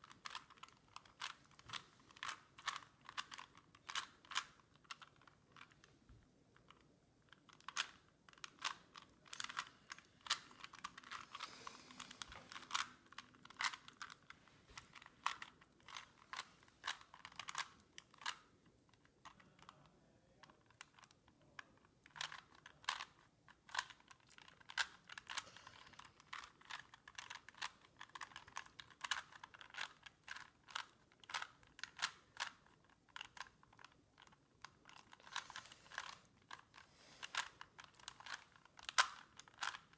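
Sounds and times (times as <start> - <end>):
puzzle cube clicking: 0.0 - 5.9, 6.5 - 39.9.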